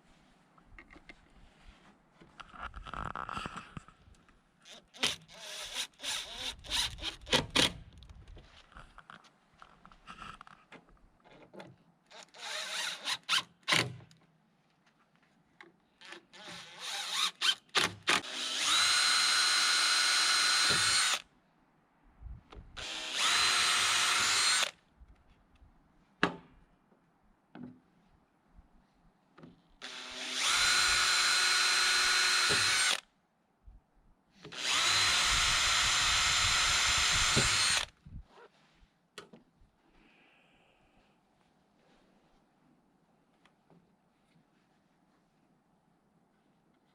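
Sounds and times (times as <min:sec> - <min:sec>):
power drill whining: 0:04.7 - 0:07.3, 0:16.4 - 0:21.2, 0:22.8 - 0:24.8, 0:29.8 - 0:33.0, 0:34.5 - 0:37.9.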